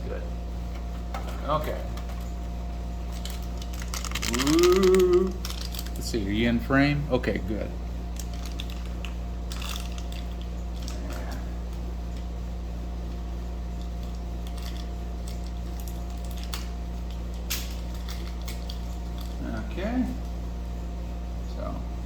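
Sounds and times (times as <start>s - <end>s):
air conditioner humming: 0.0s - 22.0s
small parts clicking and rustling: 3.1s - 6.4s, 8.1s - 12.3s, 13.8s - 20.4s.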